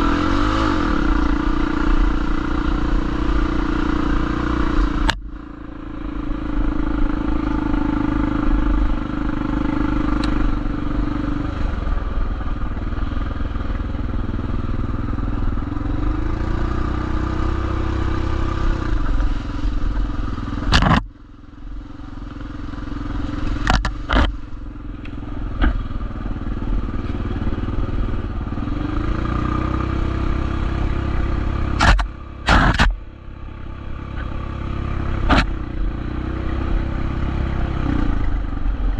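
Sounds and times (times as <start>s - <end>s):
motorcycle engine accelerating: 0.0s - 38.9s
knocks and clatters: 23.6s - 24.4s, 31.8s - 33.0s.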